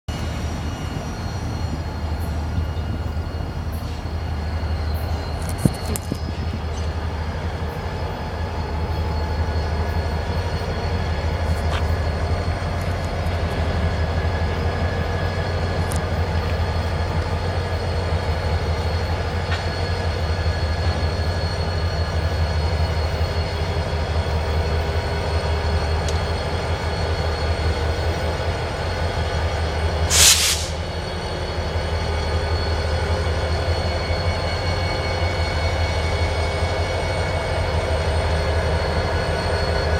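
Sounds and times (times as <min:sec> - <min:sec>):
freight train rumbling: 0:00.1 - 0:39.9
loud hiss burst: 0:30.1 - 0:30.9.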